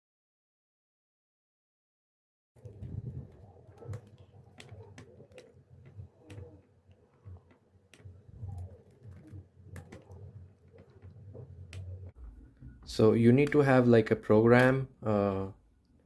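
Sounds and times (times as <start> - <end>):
laptop clicks: 13.3 - 13.8.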